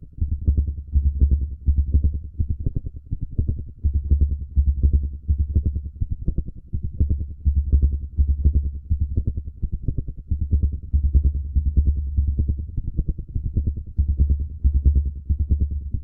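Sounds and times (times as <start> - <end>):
heartbeat thumps: 10.3 - 16.0.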